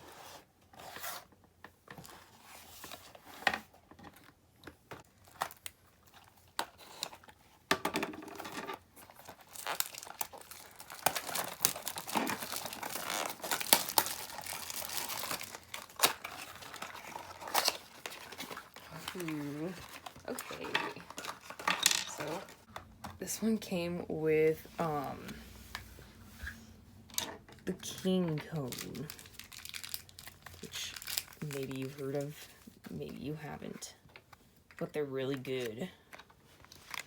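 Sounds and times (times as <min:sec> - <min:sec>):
packaging clicks and rustles: 0:03.9 - 0:22.7, 0:28.3 - 0:32.5, 0:36.0 - 0:37.0
packaging crinkling and tearing: 0:05.1 - 0:07.4, 0:08.3 - 0:22.7, 0:28.4 - 0:32.4, 0:36.1 - 0:37.0.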